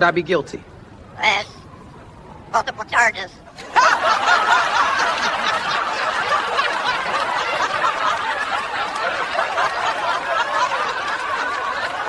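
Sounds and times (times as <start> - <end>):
people laughing: 3.5 - 12.0.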